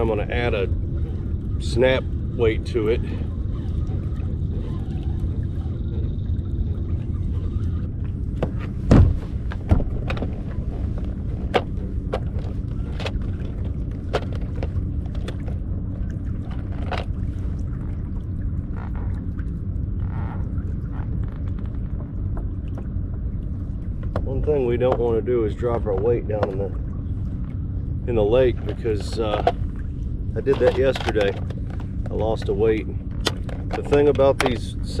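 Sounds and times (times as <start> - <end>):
steady low rumble: 0.0 - 35.0
loud thumps: 8.4 - 10.3.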